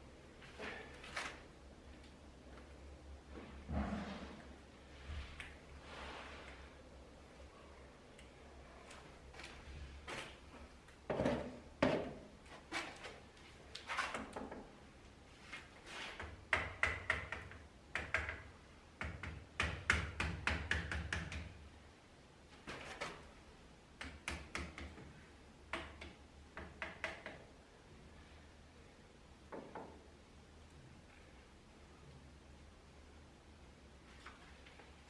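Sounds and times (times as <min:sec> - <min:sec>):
knocks and taps of hand work: 0:11.1 - 0:12.2, 0:16.2 - 0:21.6, 0:24.0 - 0:25.1, 0:25.7 - 0:27.5, 0:29.5 - 0:30.0.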